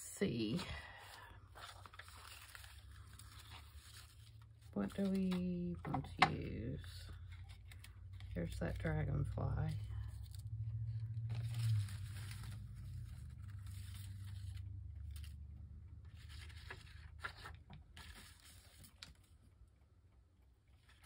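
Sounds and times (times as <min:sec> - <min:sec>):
paper rustling and scraping: 0:00.5 - 0:19.4
low hum: 0:00.8 - 0:17.1.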